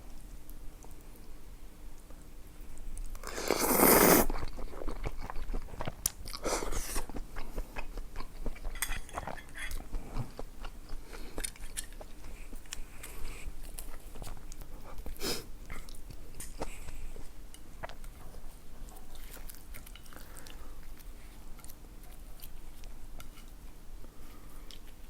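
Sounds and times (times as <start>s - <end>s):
chewing with clicks and crunches: 0.1s - 25.0s
biting or slurping: 3.2s - 7.2s.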